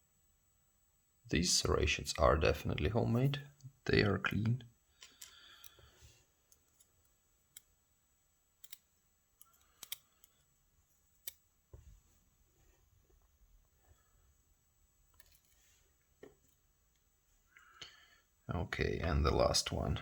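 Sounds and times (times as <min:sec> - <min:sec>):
small metallic clicks of lock pins: 0:04.9 - 0:05.8, 0:08.6 - 0:10.4.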